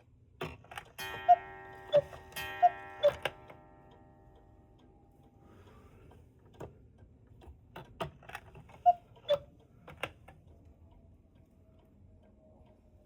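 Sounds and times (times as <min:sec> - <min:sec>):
cuckoo clock clicks and knocks: 0:00.4 - 0:04.0.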